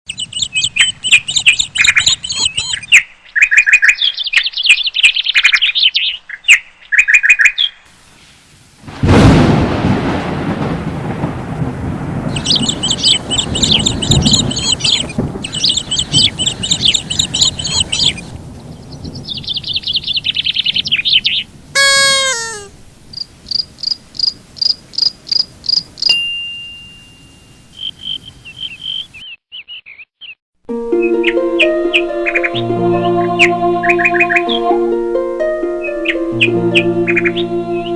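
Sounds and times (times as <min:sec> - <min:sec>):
high rapid bird chirps: 0:00.1 - 0:06.0, 0:12.3 - 0:22.7, 0:27.7 - 0:30.4
falling whistle-like bird call: 0:12.3 - 0:18.3, 0:21.8 - 0:22.7.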